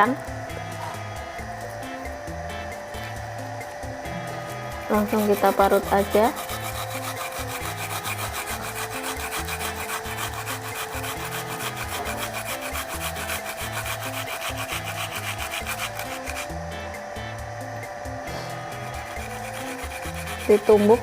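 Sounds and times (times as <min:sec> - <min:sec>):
grater scraping strokes: 0:04.8 - 0:16.5, 0:18.5 - 0:21.0.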